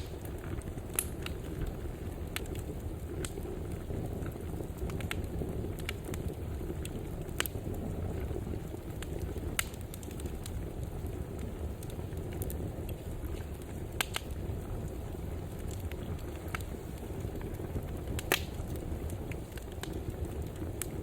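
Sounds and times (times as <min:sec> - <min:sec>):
fire crackling and popping: 0:00.0 - 0:21.0
fire rumbling in fireplace: 0:00.0 - 0:21.0.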